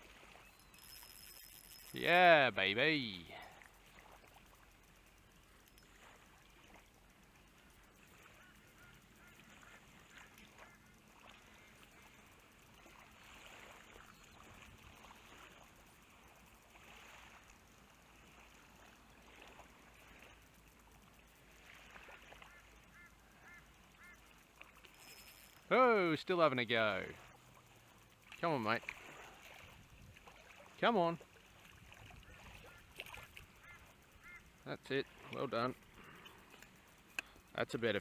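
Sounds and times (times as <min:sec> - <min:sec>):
faint bird calls: 0:07.5 - 0:14.6, 0:22.0 - 0:25.6, 0:32.1 - 0:34.6.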